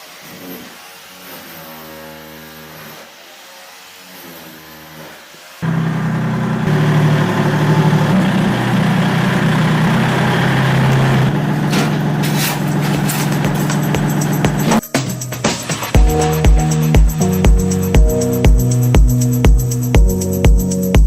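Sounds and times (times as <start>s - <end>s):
heavy engine running: 5.6s - 14.8s.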